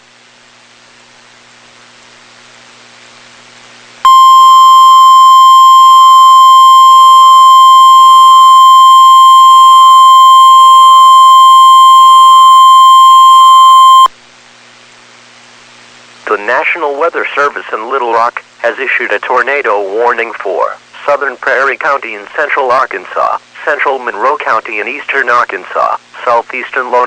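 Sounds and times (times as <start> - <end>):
faint radio hiss: 0.0 - 27.0
steady alarm tone: 4.1 - 14.1.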